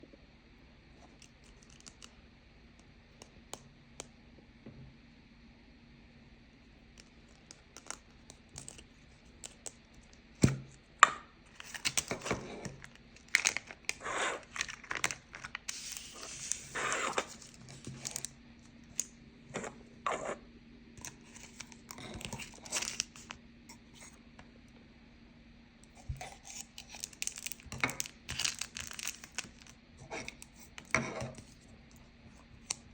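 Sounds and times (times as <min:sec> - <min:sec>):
faint steady hum: 0:00.0 - 0:32.9
crinkly packaging tearing: 0:01.4 - 0:02.1, 0:11.5 - 0:12.2, 0:12.8 - 0:18.3, 0:21.0 - 0:23.4, 0:26.2 - 0:30.7.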